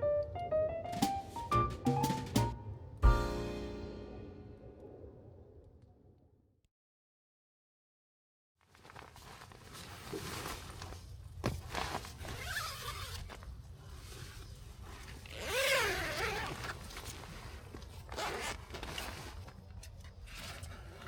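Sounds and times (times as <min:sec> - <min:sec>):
zipper being pulled: 0:11.7 - 0:13.4, 0:14.9 - 0:19.5.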